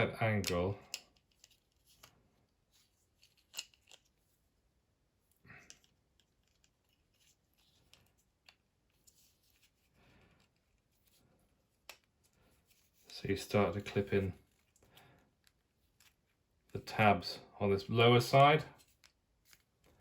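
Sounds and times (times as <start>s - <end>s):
plastic parts clicking: 3.2s - 4.2s.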